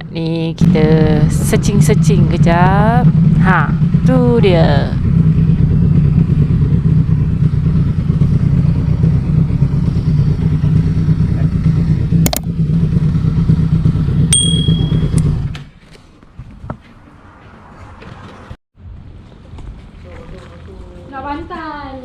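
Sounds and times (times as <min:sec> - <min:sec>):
motorcycle engine idling: 0:01.2 - 0:15.5
sharp click: 0:12.3 - 0:12.5
high-pitched beep: 0:14.4 - 0:15.3.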